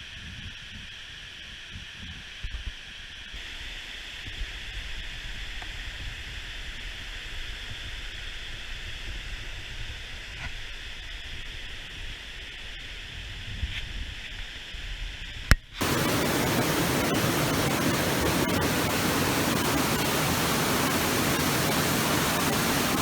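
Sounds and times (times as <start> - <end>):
steady hiss: 15.8 - 23.0.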